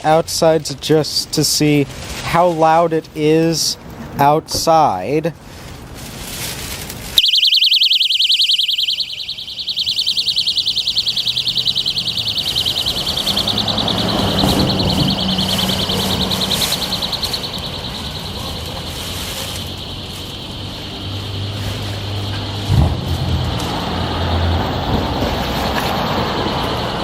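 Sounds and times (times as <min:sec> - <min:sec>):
high-pitched warbling alarm tone: 0:07.2 - 0:22.4.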